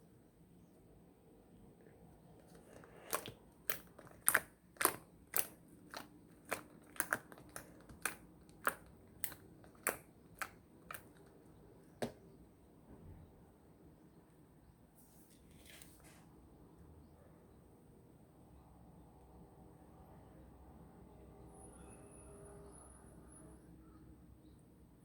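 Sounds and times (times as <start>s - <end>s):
slime popping and clicking: 3.0s - 11.4s.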